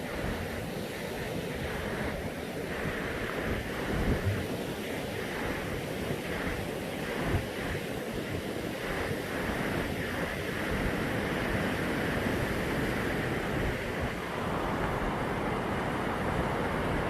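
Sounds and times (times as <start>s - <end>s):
wind buffeting microphone: 0.0s - 17.0s
waterfall rushing: 10.5s - 17.0s.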